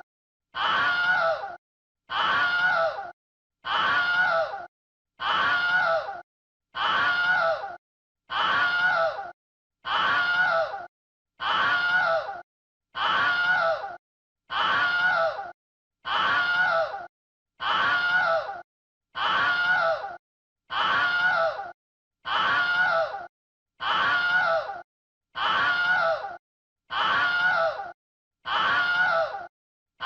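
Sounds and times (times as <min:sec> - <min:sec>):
person screaming: 0:00.6 - 0:06.2, 0:06.8 - 0:12.4, 0:13.0 - 0:18.6, 0:19.2 - 0:24.8, 0:25.4 - 0:29.5.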